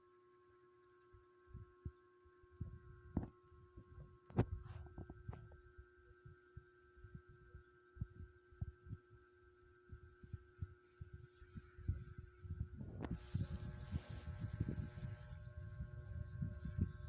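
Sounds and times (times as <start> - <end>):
faint electrical hum: 0.0 - 17.0.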